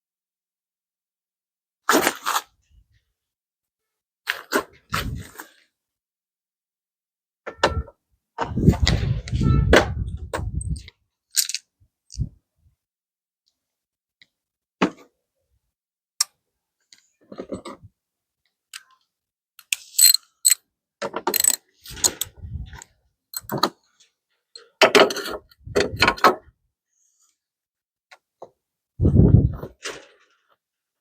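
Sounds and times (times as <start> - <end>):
metal clicks and clinks of tools: 19.7 - 20.6, 21.3 - 22.3, 23.4 - 23.6
ratchet rattling: 20.0 - 20.6, 21.3 - 22.3.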